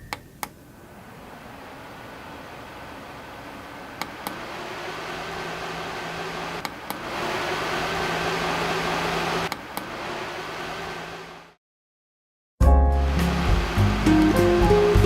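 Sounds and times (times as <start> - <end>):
handheld fan whirring: 0.0 - 0.7, 1.3 - 11.5.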